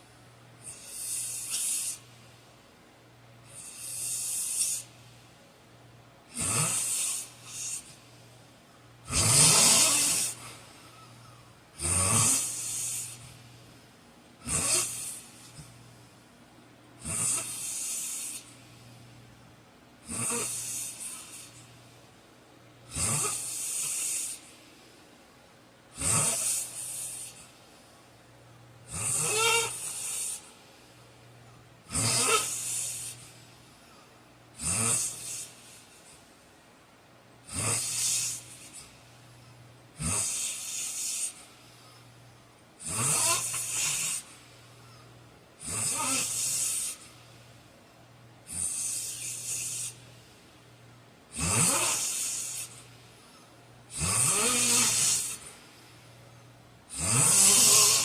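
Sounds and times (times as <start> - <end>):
man snoring: 3.6 - 4.9, 6.3 - 8.0, 9.0 - 10.6, 11.8 - 13.3, 14.4 - 15.6, 17.0 - 18.5, 20.0 - 21.6, 22.9 - 24.5, 26.0 - 27.4, 28.9 - 30.5, 31.9 - 33.2, 34.6 - 35.7, 37.4 - 38.8, 40.0 - 41.4, 42.8 - 44.3, 45.6 - 47.0, 48.5 - 50.0, 51.3 - 52.8, 53.9 - 55.5, 56.9 - 58.0.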